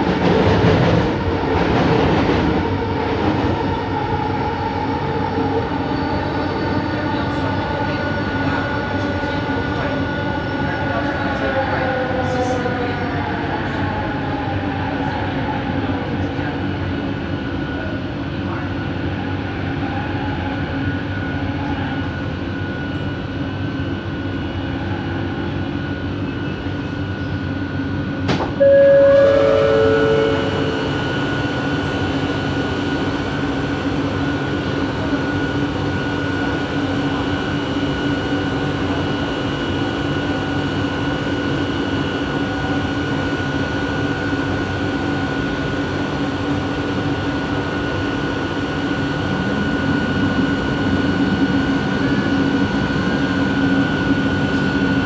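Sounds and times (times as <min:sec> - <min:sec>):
train motor hum and whine: 0:02.5 - 0:55.0
two-note descending tone: 0:28.6 - 0:31.8.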